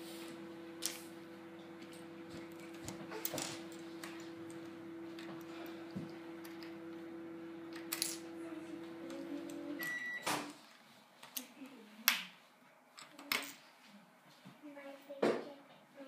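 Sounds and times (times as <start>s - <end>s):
steady hum: 0.0s - 10.5s.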